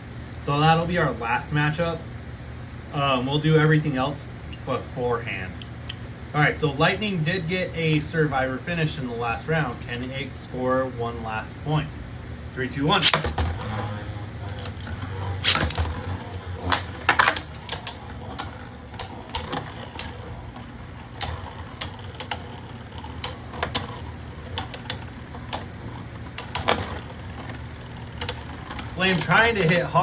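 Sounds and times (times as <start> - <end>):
spinning tops clacking in plastic stadium: 12.6 - 30.0.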